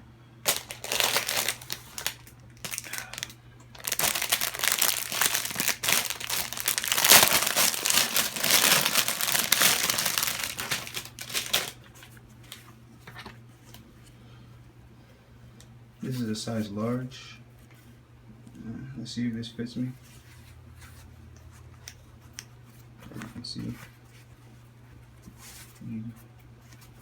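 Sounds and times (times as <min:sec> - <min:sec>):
packaging crinkling and rustling: 0:00.4 - 0:13.8.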